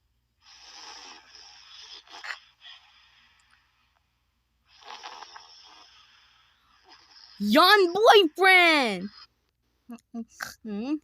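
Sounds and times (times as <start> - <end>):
breathy snores: 0.4 - 3.7, 4.6 - 7.4.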